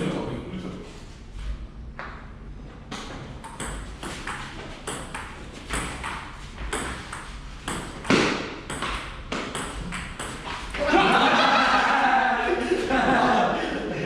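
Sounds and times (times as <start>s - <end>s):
table tennis ball hits: 2.9s - 10.7s.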